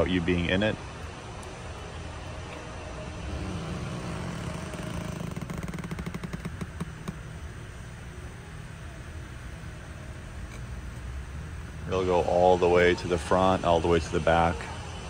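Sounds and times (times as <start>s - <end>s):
electric seat motor humming: 1.2s - 15.0s
rapid fine ticking: 3.4s - 7.2s.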